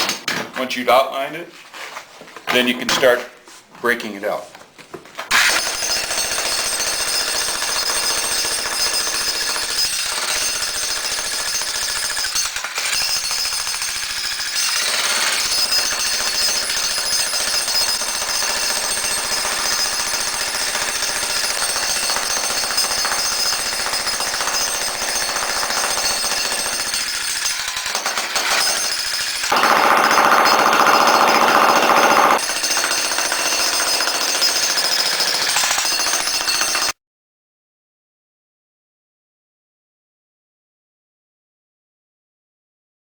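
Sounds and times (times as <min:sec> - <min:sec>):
jackhammer hammering concrete: 0:05.3 - 0:37.0.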